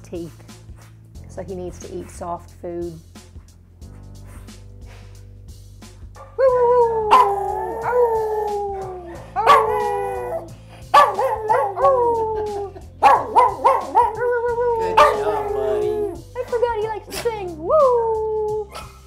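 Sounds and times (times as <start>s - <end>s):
dog yelping: 6.2s - 15.8s
dog howling: 6.3s - 16.2s.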